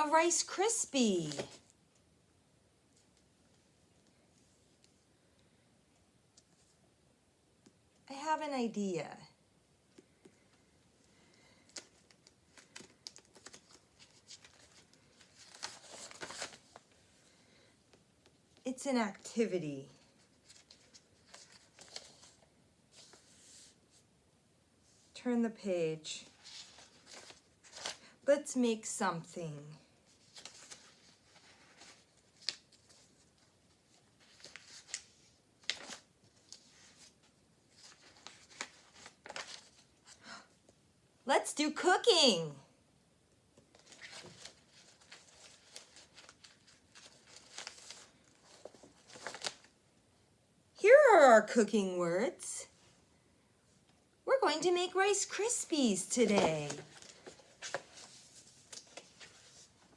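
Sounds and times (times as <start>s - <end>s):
pages rustling: 1.1s - 1.8s, 10.0s - 17.4s, 20.0s - 24.0s, 26.3s - 28.1s, 30.0s - 40.0s, 43.6s - 49.8s, 56.0s - 59.9s.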